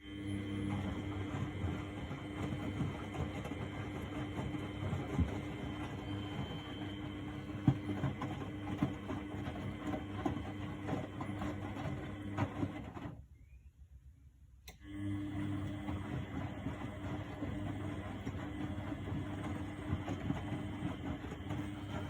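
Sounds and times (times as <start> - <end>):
washing machine motor hum: 0.0 - 13.3, 14.7 - 22.0.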